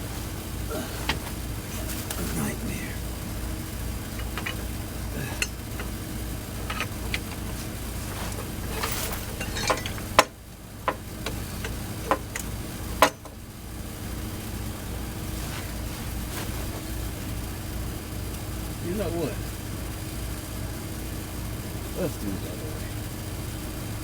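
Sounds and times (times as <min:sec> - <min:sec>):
steady low hum: 0:00.0 - 0:24.0
metallic clinks and knocks: 0:04.0 - 0:13.4.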